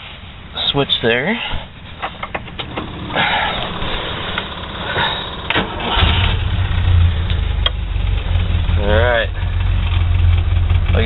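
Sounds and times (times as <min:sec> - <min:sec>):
engine idling: 0:00.2 - 0:11.0
starter cranking: 0:02.0 - 0:08.9.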